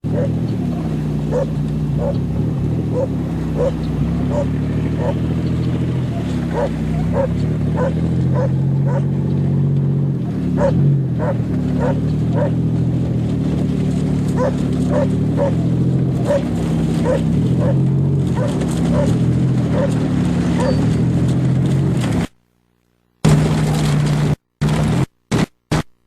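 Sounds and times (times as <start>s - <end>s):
car engine running: 0.0s - 22.4s, 23.2s - 25.5s
dog barking: 0.1s - 2.3s, 2.9s - 5.3s, 6.0s - 9.2s, 10.5s - 12.6s, 14.3s - 20.0s, 20.6s - 20.9s.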